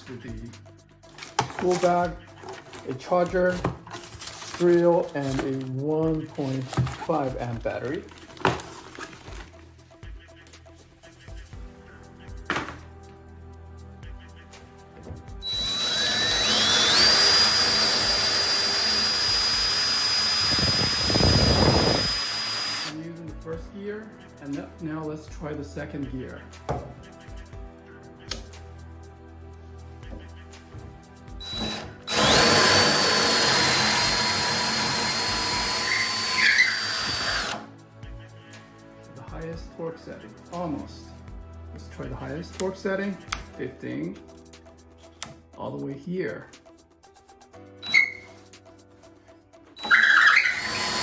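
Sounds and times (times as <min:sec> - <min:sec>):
cordless drill motor whine: 0:15.4 - 0:23.0, 0:31.4 - 0:37.7, 0:47.8 - 0:48.3, 0:49.8 - 0:51.0.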